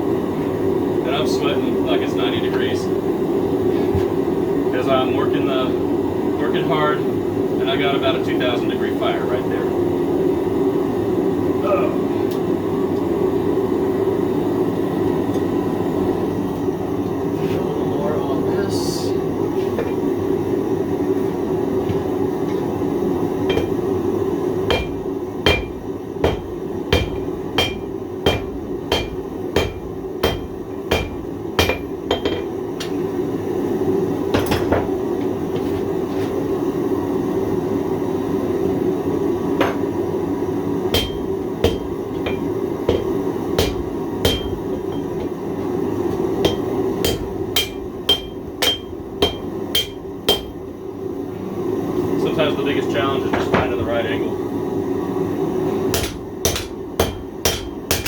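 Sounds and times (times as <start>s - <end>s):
forge fire roaring: 0.0s - 58.0s
hammer striking steel on anvil: 23.5s - 23.8s, 24.7s - 33.0s, 40.9s - 45.3s, 46.4s - 50.6s, 55.9s - 58.0s.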